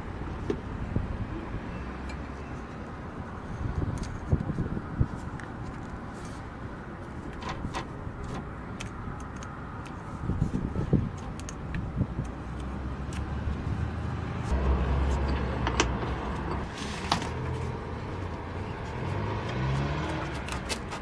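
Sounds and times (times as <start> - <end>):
small clicks and knocks of hand work: 7.3 - 10.0, 11.1 - 13.3.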